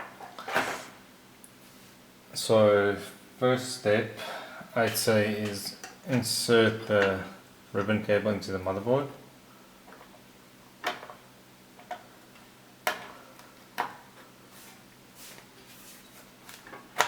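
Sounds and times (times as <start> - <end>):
soft rustle: 14.5 - 16.7.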